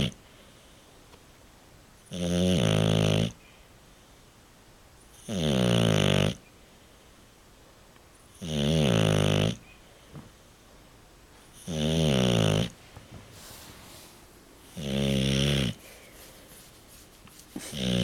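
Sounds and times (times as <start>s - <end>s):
dog snoring: 2.0s - 3.4s, 5.1s - 6.4s, 8.4s - 9.6s, 11.5s - 12.8s, 14.6s - 15.8s, 17.6s - 18.0s.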